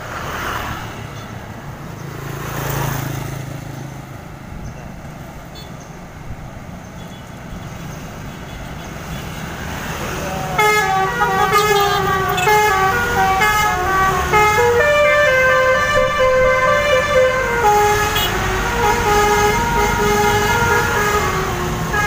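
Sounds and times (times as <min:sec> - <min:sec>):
vehicle engine rumbling: 0:00.0 - 0:22.0
multi-tone bus horn melody: 0:10.4 - 0:22.0.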